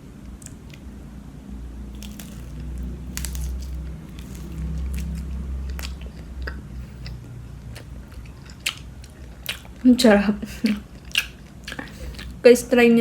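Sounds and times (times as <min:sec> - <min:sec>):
crunchy chewing of fried chicken: 0:01.9 - 0:09.9, 0:10.6 - 0:12.5.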